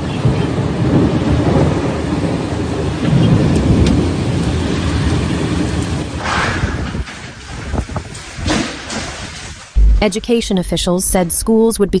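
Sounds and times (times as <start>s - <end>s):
thunder rumbling: 0.0s - 12.0s.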